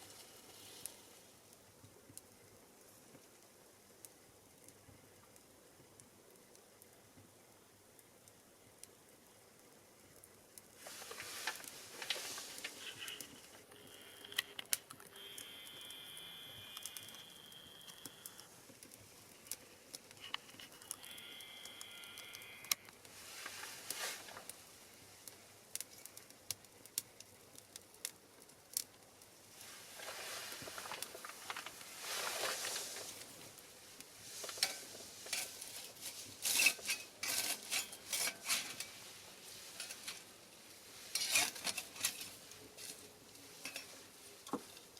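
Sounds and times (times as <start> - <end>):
pine cones and branches burning: 0.0 - 44.9
high steady whistle: 15.1 - 18.5.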